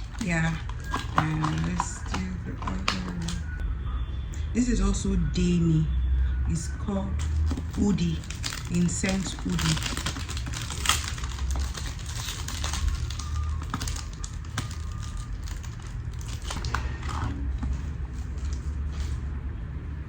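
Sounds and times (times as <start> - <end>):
packaging crinkling: 0.0 - 3.6, 7.2 - 19.2.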